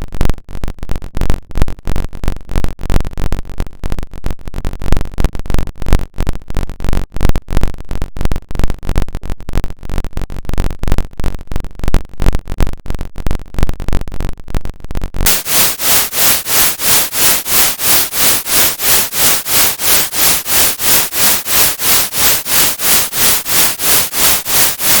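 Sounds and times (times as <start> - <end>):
harsh stuttering synthetic buzz: 15.3 - 25.0
pulsing synthetic hiss: 15.3 - 25.0.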